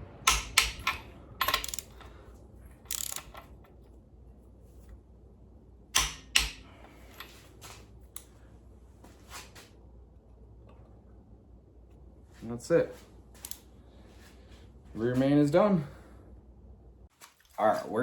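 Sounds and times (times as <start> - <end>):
torque wrench ratcheting and clicking: 0.3 - 2.1, 2.9 - 3.6, 6.0 - 6.6.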